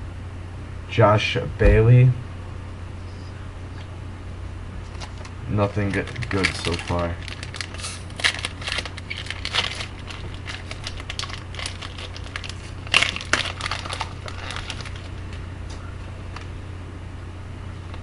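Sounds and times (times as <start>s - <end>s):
low steady hum: 0.0s - 18.0s
cards being handled: 4.8s - 15.4s
card pack wrapper crinkling: 4.9s - 15.3s.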